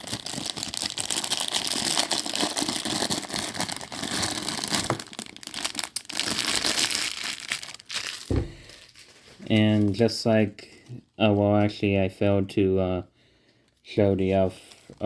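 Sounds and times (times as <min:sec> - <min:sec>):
plastic packaging crinkling: 0:00.0 - 0:10.2, 0:14.2 - 0:15.0.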